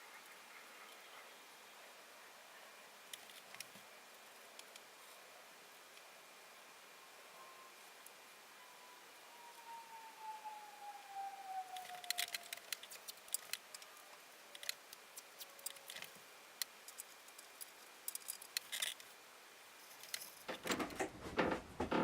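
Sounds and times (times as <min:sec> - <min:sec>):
small metal objects clicking: 0:14.5 - 0:19.1, 0:19.9 - 0:20.6
clattering and rustling handling: 0:19.8 - 0:22.0.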